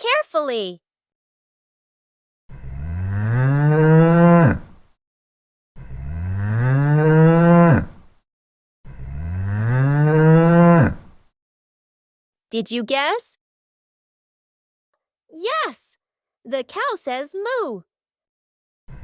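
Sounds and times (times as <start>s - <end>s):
cow mooing: 2.5s - 4.8s, 5.8s - 8.1s, 8.9s - 11.2s.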